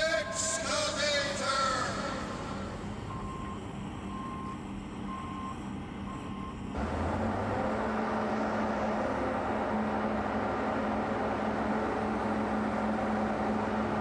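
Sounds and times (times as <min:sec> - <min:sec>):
construction machine engine running: 0:00.0 - 0:14.0
backup alarm beeping: 0:00.3 - 0:06.7.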